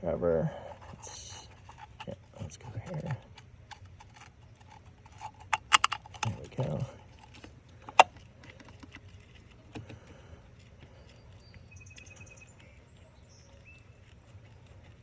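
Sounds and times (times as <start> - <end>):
metallic clicks on engine parts: 2.9 - 10.9.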